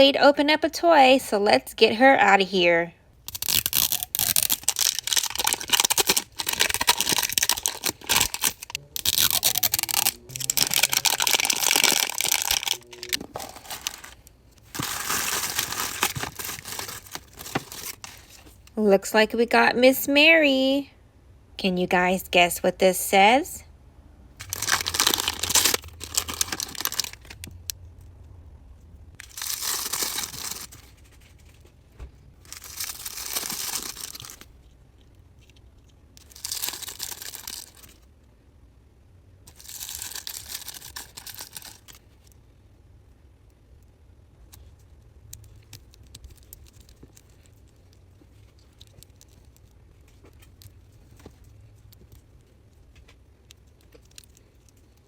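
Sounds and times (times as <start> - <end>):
plastic packaging tearing and crinkling: 3.2 - 18.6, 24.4 - 27.5, 29.2 - 31.5, 32.4 - 34.5, 36.2 - 38.0, 39.5 - 42.0.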